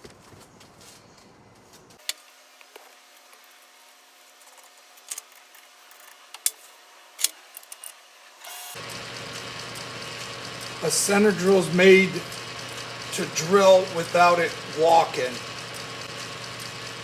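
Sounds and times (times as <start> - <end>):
lathe motor hum: 8.7 - 17.0.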